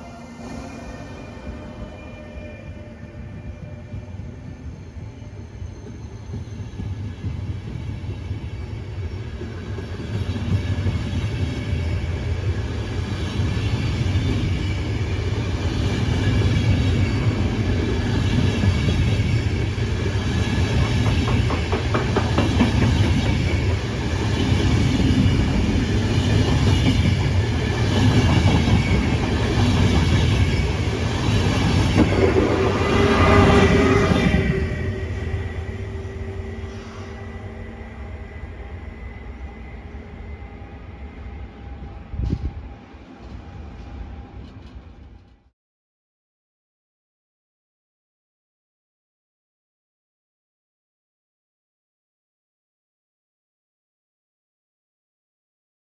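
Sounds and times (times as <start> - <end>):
train rumbling past: 0.0 - 45.5
wheels clacking over rail joints: 20.7 - 23.5.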